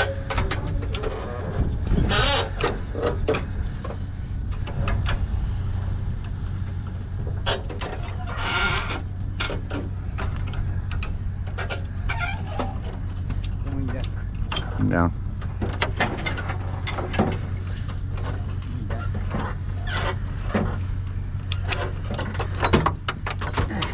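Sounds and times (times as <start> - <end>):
metal squeals or creaks: 0.0 - 3.6, 7.3 - 15.0, 15.8 - 20.9
truck engine running: 0.0 - 23.9
metal clanks and knocks: 7.2 - 23.9.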